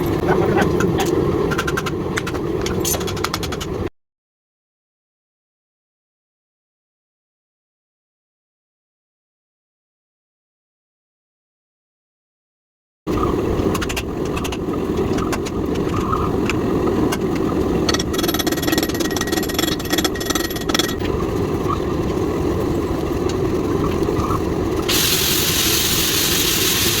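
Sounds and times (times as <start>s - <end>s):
low mechanical roar: 0.0s - 3.9s, 13.1s - 27.0s
loud hiss: 24.9s - 27.0s.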